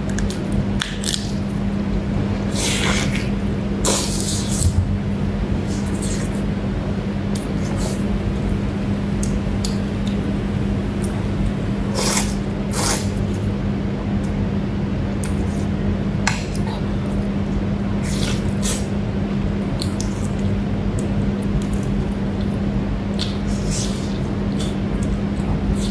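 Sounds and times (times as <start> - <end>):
steady low hum: 0.0 - 25.9.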